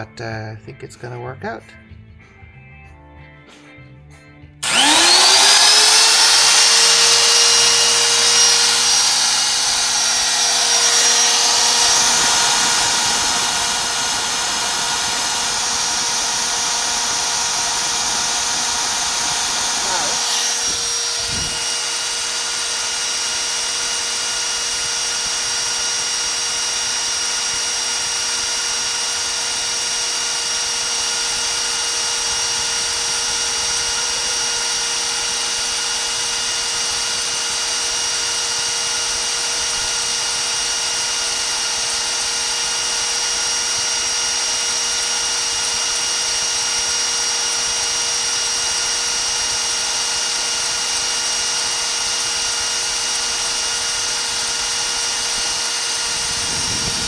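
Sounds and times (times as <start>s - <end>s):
die grinder whining: 4.6s - 57.0s.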